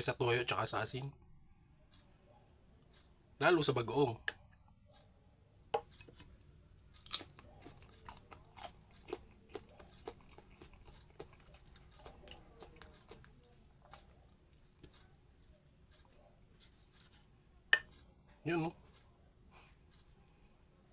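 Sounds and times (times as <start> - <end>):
chewing crunchy fruit: 5.8 - 19.1.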